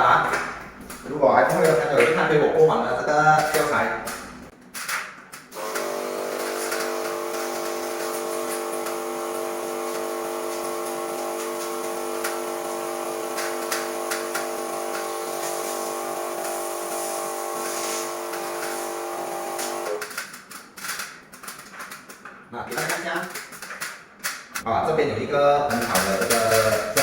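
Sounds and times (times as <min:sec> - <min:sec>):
electric pump motor hum: 0:05.5 - 0:20.0
water jet spraying: 0:05.6 - 0:20.0.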